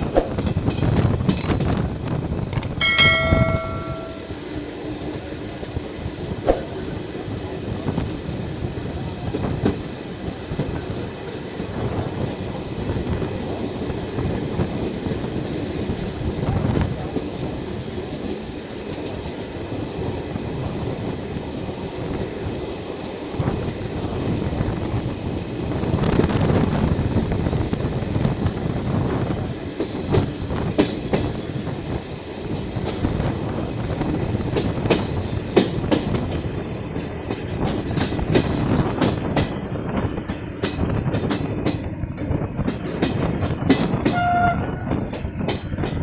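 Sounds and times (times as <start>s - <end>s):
train rumbling: 0.0s - 46.0s
sharp click: 1.4s - 1.6s, 2.5s - 4.2s
train horn blast: 44.0s - 45.0s.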